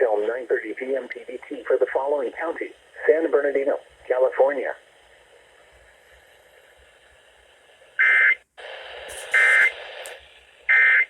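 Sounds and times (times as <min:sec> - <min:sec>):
static hiss: 0:00.0 - 0:11.0
screechy digital data tones: 0:09.3 - 0:09.7.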